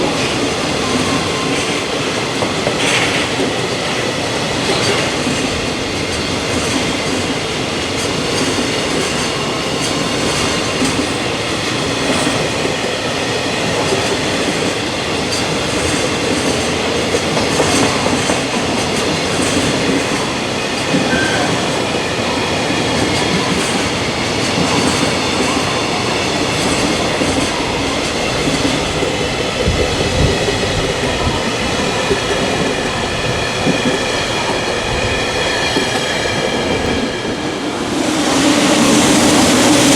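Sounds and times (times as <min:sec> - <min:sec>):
steel wheels clacking on rail joints: 0:00.0 - 0:37.7.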